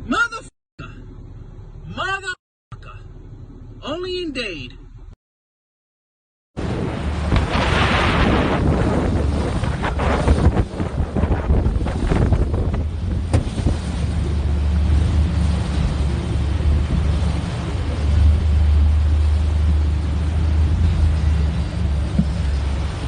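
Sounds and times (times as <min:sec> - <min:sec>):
road or wind noise: 0:06.6 - 0:23.0.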